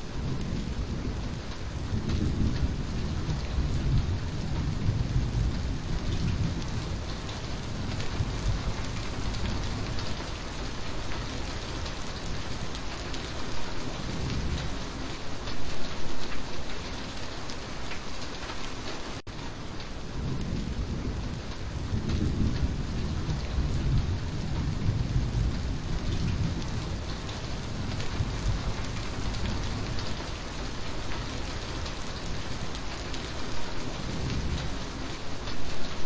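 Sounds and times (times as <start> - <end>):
heavy rain falling: 0.0 - 36.0
thunder rolling: 0.2 - 10.5, 20.2 - 32.5.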